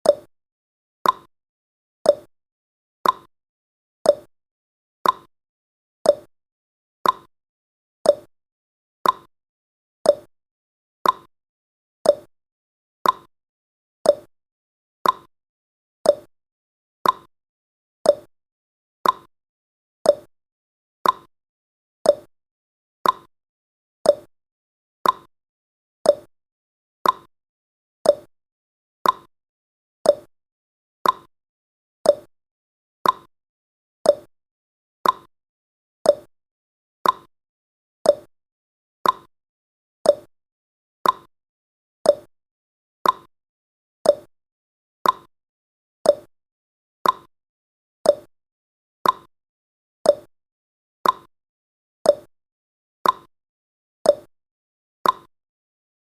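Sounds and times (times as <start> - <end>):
timer ticking clicks: 0.0 - 0.3, 1.0 - 1.3, 2.0 - 2.3, 3.0 - 3.3, 4.0 - 4.3, 5.0 - 5.3, 6.0 - 6.3, 7.0 - 7.3, 8.0 - 8.3, 9.0 - 9.3, 10.0 - 10.3, 11.0 - 11.3, 12.0 - 12.3, 13.0 - 13.3, 14.0 - 14.3, 15.0 - 15.3, 16.0 - 16.3, 17.0 - 17.3, 18.0 - 18.3, 19.0 - 19.3, 20.0 - 20.3, 21.0 - 21.3, 22.0 - 22.3, 23.0 - 23.3, 24.0 - 24.3, 25.0 - 25.3, 26.0 - 26.3, 27.0 - 27.3, 28.0 - 28.3, 29.0 - 29.3, 30.0 - 30.3, 31.0 - 31.3, 32.0 - 32.3, 33.0 - 33.3, 34.0 - 34.3, 35.0 - 35.3, 36.0 - 36.3, 37.0 - 37.3, 38.0 - 38.3, 39.0 - 39.3, 40.0 - 40.3, 41.0 - 41.3, 42.0 - 42.3, 43.0 - 43.3, 44.0 - 44.3, 45.0 - 45.3, 46.0 - 46.3, 47.0 - 47.3, 48.0 - 48.3, 49.0 - 49.3, 50.0 - 50.3, 51.0 - 51.3, 52.1 - 52.3, 53.0 - 53.3, 54.1 - 54.3, 55.0 - 55.3.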